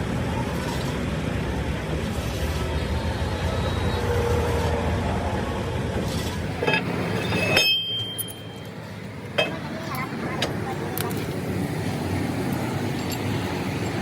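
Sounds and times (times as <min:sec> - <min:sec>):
sharp metallic knocks: 0:06.6 - 0:08.7.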